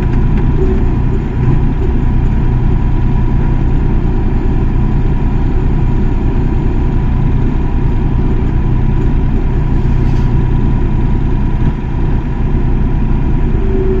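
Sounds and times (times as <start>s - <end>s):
excavator diesel engine running: 0.0s - 14.0s
thin steady whine: 12.5s - 14.0s.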